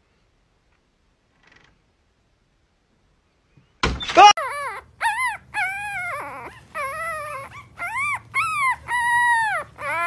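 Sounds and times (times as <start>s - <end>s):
dog howling: 4.4s - 10.0s.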